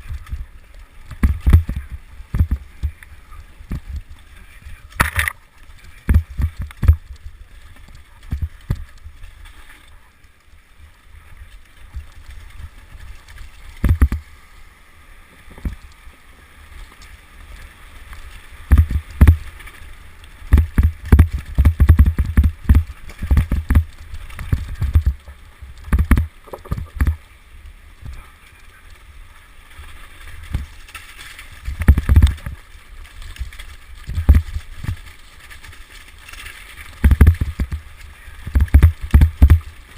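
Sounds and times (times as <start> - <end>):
bike knocks and rattles: 0.0 - 3.0, 4.9 - 5.4, 6.0 - 7.1, 13.8 - 14.2, 18.6 - 19.8, 20.4 - 25.2, 25.9 - 27.2, 30.5 - 32.6, 33.4 - 35.6, 36.2 - 39.9
wind rumble on microphone: 0.0 - 10.2, 10.8 - 14.4, 15.4 - 39.9.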